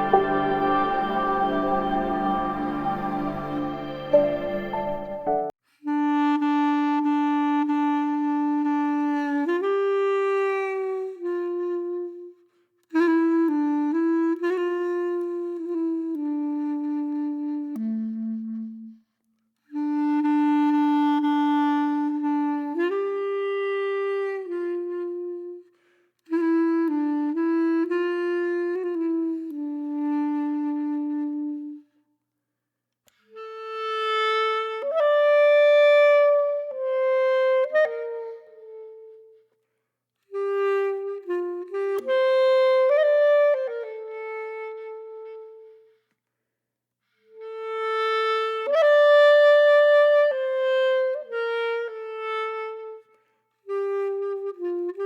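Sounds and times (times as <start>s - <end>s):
solo woodwind melody: 0.0s - 32.0s, 33.1s - 46.2s, 47.0s - 55.0s.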